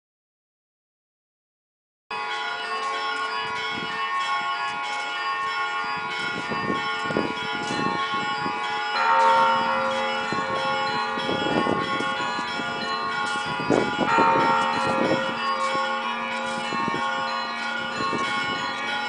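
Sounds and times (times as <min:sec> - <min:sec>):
church bells ringing: 0:02.1 - 0:19.0.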